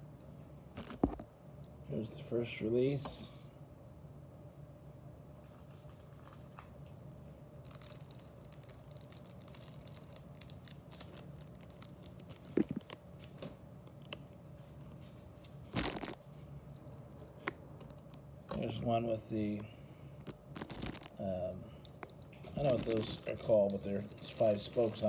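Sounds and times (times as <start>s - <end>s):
steady low hum: 0.0s - 25.0s
toy cars clicking and rustling: 21.9s - 25.0s.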